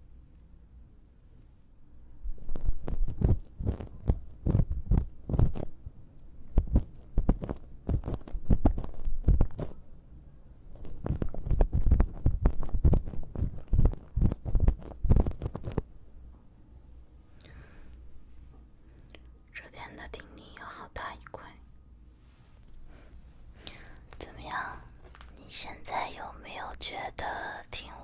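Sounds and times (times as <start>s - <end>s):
tweezers crackling in ear canal: 2.6s - 5.7s, 6.6s - 9.7s, 10.8s - 15.8s.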